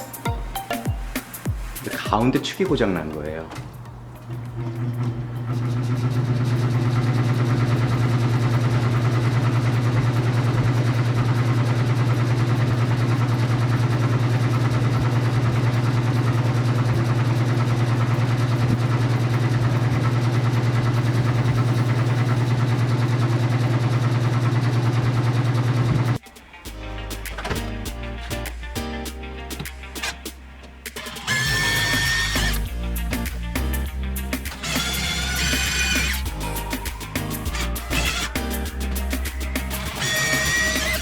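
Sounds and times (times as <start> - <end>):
air conditioner fan humming with rattle: 1.6 - 26.2, 34.5 - 41.0.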